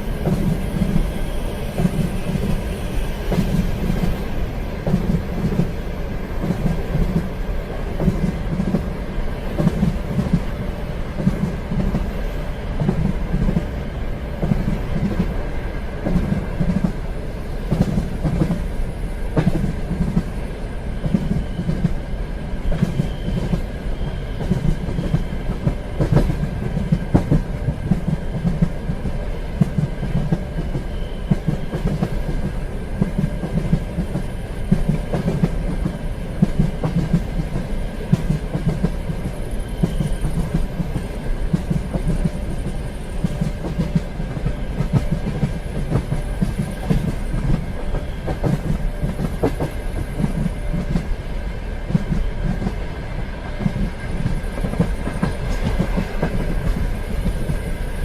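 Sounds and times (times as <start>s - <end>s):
train rumbling on rails: 0.0s - 58.0s
wheels clickety-clack: 6.4s - 8.9s, 17.7s - 18.7s, 19.3s - 20.4s, 22.7s - 51.1s, 51.9s - 58.0s.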